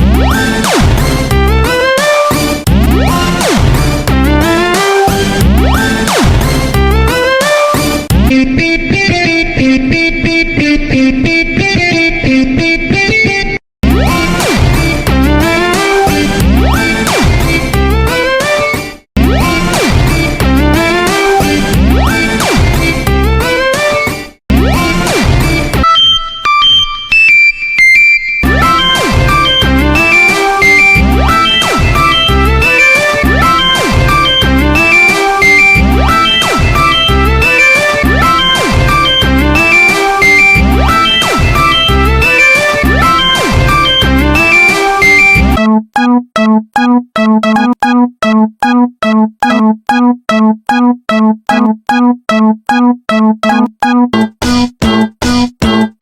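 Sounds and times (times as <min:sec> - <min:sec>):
electronic beeping melody: 0:25.8 - 0:55.9.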